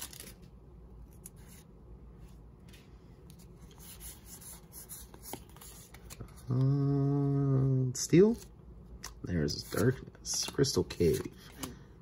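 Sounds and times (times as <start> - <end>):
foil pack and cards rustling: 0.0 - 0.5.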